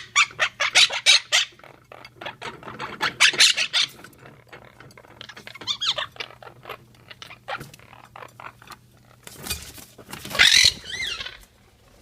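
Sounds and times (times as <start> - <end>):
parrot squawk: 0.0 - 1.6, 2.2 - 4.0, 10.3 - 11.4
parrots scrabbling clicks and taps: 0.2 - 11.0.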